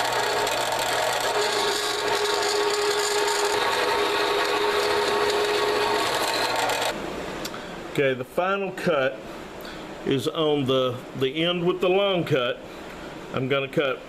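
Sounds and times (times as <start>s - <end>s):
bandsaw blade rasping through metal: 0.0s - 6.9s
motor hum: 0.0s - 7.0s.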